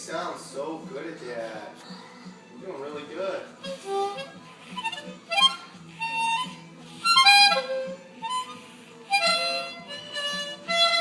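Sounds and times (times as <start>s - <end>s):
harmonica short blows: 3.6s - 11.0s.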